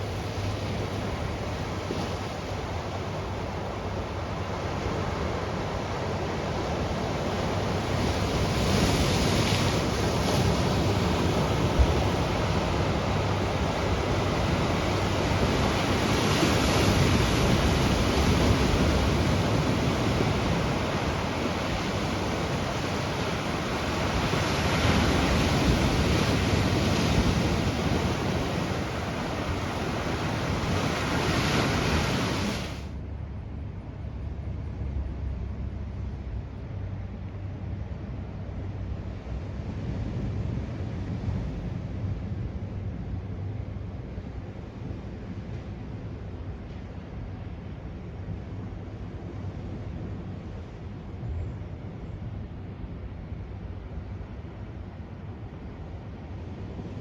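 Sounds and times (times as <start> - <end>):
ocean surf on rocky shore: 0.0 - 33.0.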